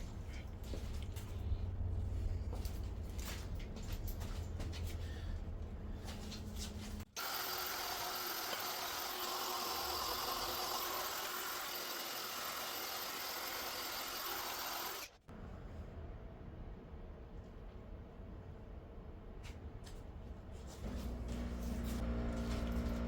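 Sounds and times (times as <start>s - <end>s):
handheld power tool running: 7.1s - 15.2s.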